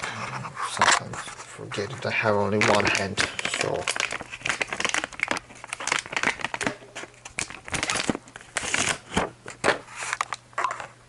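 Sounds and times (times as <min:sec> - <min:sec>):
plastic packaging crinkling: 0:01.7 - 0:10.9.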